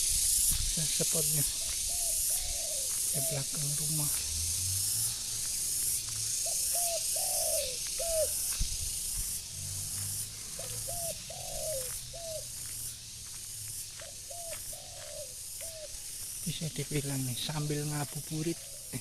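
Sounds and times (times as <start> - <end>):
pulsing high hiss: 0.0 - 10.8
dove cooing: 1.1 - 4.1, 6.3 - 8.5, 10.4 - 12.5, 14.0 - 16.0.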